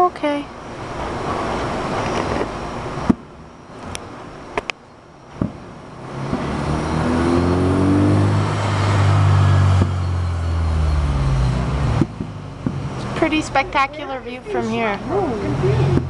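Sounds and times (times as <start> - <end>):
car driving by: 5.4 - 14.4.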